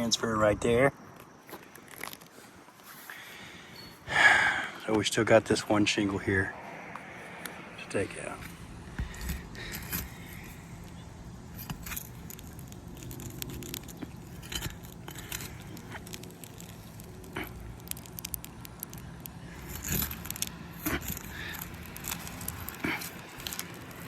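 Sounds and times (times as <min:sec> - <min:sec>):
pry bar scraping under shingles: 0:07.8 - 0:24.0.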